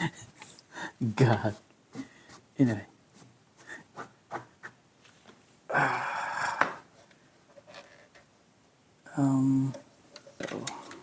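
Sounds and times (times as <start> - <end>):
plastic parts clicking and knocking: 9.7 - 11.0.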